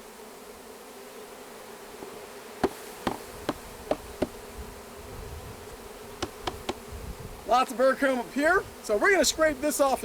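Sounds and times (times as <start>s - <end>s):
bees buzzing: 0.0s - 10.0s
sharp knocks: 2.6s - 4.4s, 6.2s - 6.8s.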